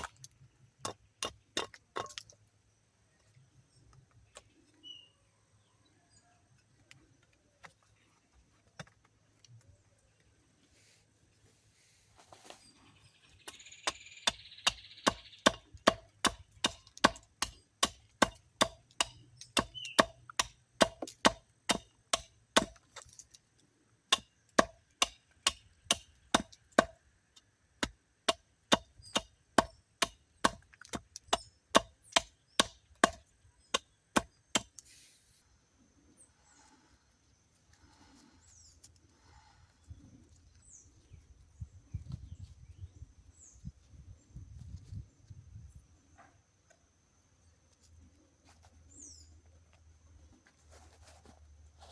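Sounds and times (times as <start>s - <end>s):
wood being chopped: 13.9s - 23.1s, 24.1s - 27.0s, 27.8s - 34.8s.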